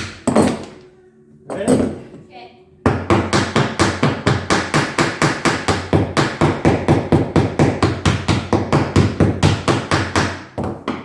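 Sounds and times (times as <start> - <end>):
rapid hammering on wood: 2.9 - 11.0.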